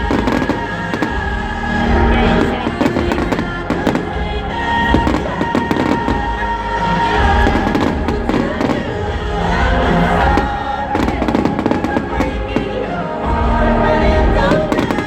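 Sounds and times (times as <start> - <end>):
fireworks bangs and crackles: 0.0 - 1.3, 2.3 - 4.2, 4.9 - 6.4, 9.7 - 12.8
music playing: 0.0 - 15.0.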